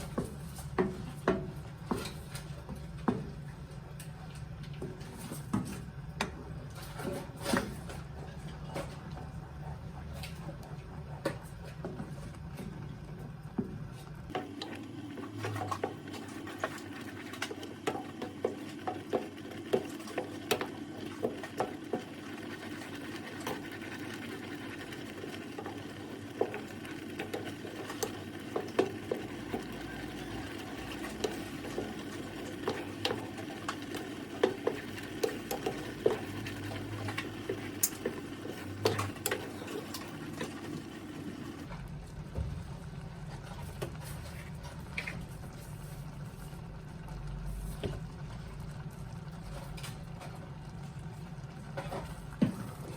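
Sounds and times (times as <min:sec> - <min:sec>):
risotto simmering with small pops: 0:00.0 - 0:52.9
steady hum: 0:13.2 - 0:42.7.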